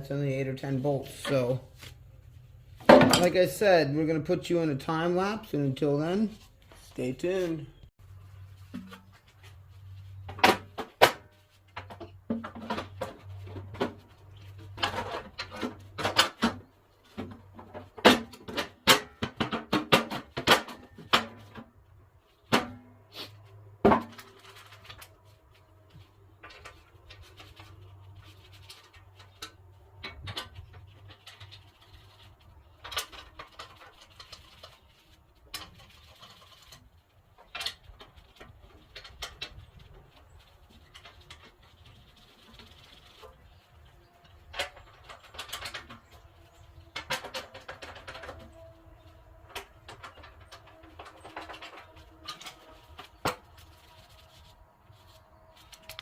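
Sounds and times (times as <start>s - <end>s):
hand tools and metal parts clicking: 23.0s - 56.0s.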